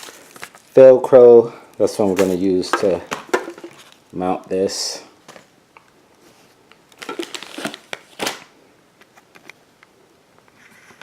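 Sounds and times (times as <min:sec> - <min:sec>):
packaging rustling and clicking: 0:00.0 - 0:00.7, 0:02.1 - 0:04.0, 0:06.8 - 0:09.6.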